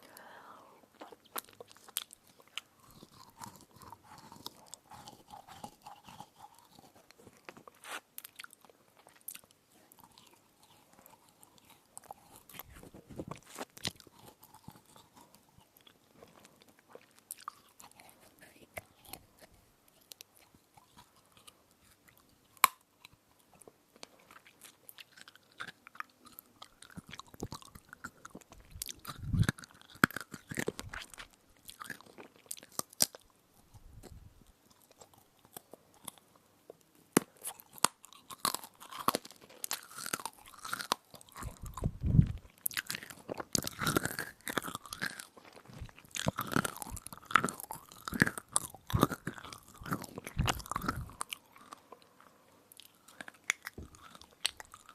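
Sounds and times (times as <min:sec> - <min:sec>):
crunchy chewing: 0:00.9 - 0:54.9
mouth sounds: 0:28.5 - 0:29.6, 0:41.4 - 0:42.5
soft low thumps: 0:41.5 - 0:42.5.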